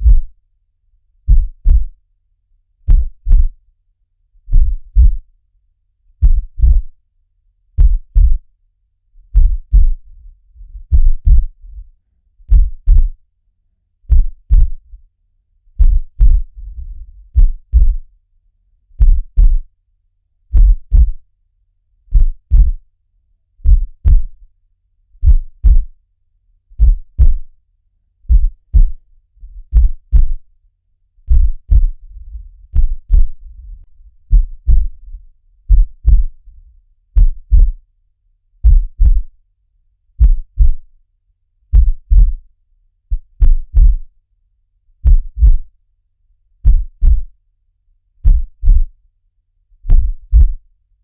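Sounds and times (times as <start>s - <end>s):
slow heartbeat thumps: 0.0s - 0.4s, 1.3s - 2.0s, 2.9s - 3.6s, 4.5s - 5.3s, 6.2s - 7.0s, 7.8s - 8.5s, 9.3s - 11.9s, 12.5s - 13.2s, 14.1s - 15.0s, 15.8s - 18.1s, 19.0s - 19.7s, 20.5s - 21.2s, 22.1s - 22.8s, 23.6s - 24.4s, 25.2s - 26.0s, 26.8s - 27.5s, 28.3s - 30.5s, 31.2s - 37.8s, 38.6s - 39.4s, 40.2s - 40.9s, 41.7s - 42.4s, 43.1s - 44.1s, 45.0s - 45.7s, 46.6s - 47.3s, 48.2s - 49.0s, 49.9s - 50.6s.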